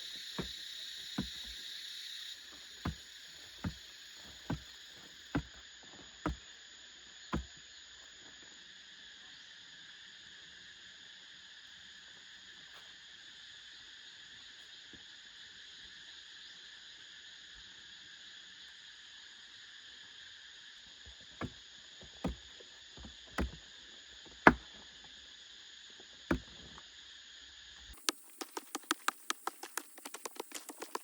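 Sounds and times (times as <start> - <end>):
forest insects chorus: 0.0 - 31.0
sharp knocks: 1.2 - 1.6, 23.0 - 23.6, 24.5 - 24.7, 26.3 - 26.6.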